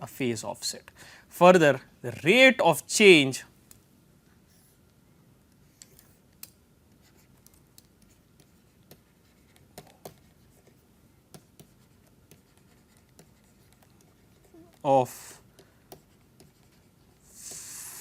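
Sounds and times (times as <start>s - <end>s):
pen writing taps and scratching: 6.9s - 14.8s, 15.5s - 17.2s.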